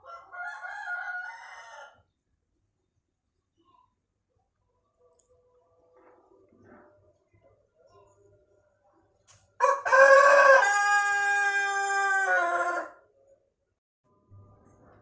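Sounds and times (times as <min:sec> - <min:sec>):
rooster crowing: 0:00.0 - 0:02.0, 0:09.6 - 0:13.0.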